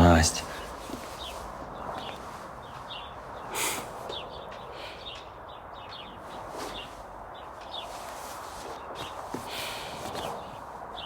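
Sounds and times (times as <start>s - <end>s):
steady background hiss: 0.0s - 1.6s
small birds chirping: 0.0s - 11.0s.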